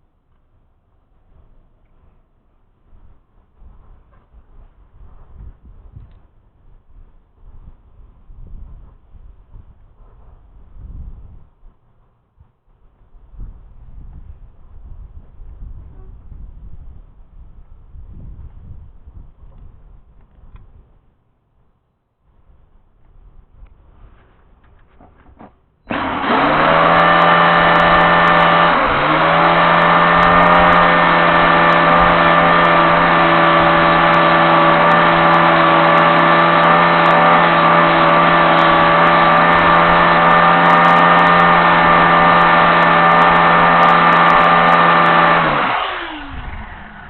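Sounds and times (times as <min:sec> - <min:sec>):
motor running: 0:25.9 - 0:47.0.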